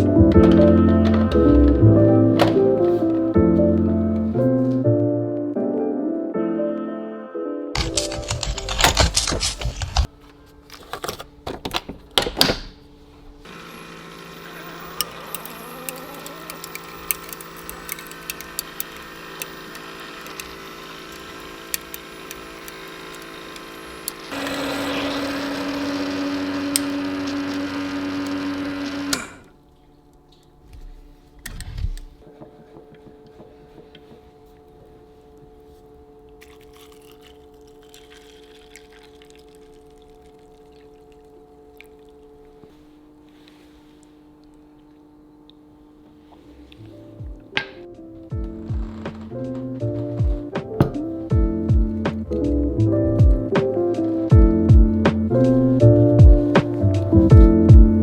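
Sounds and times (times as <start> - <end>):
coffee maker humming: 13.5 - 29.6.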